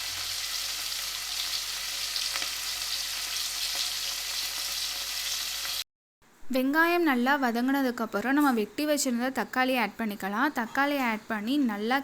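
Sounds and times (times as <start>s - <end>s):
onions sizzling in hot oil: 0.0s - 5.8s.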